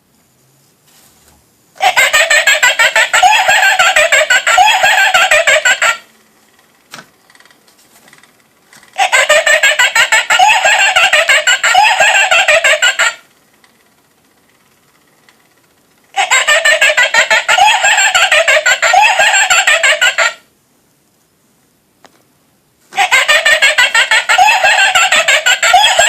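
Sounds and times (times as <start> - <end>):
recorded cackling through small speaker: 1.8 - 13.8, 16.0 - 20.5, 22.9 - 26.0.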